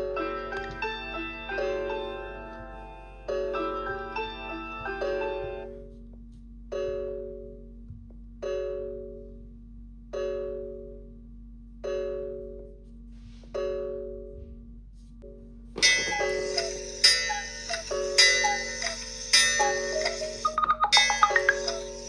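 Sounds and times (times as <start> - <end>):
bell-like phone alert chime: 15.8 - 22.0.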